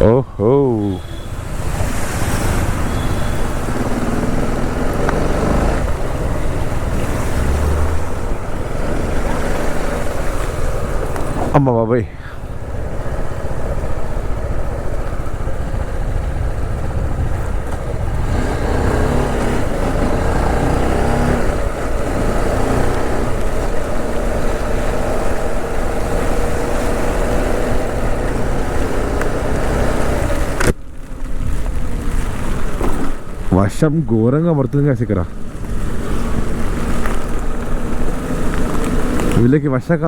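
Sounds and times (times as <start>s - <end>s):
motorcycle engine: 0.0s - 33.6s, 34.7s - 39.6s
wind noise: 0.0s - 33.6s
rain on helmet: 12.5s - 18.1s, 35.3s - 39.5s.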